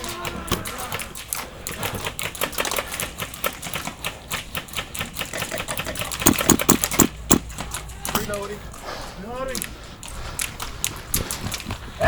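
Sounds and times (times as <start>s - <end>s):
airsoft guns firing: 2.2s - 7.7s.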